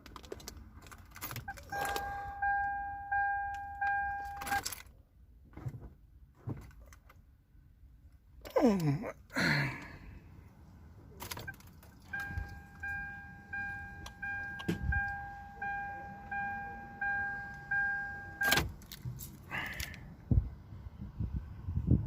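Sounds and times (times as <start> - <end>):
car warning chime dinging: 1.4 - 4.7, 11.4 - 18.7.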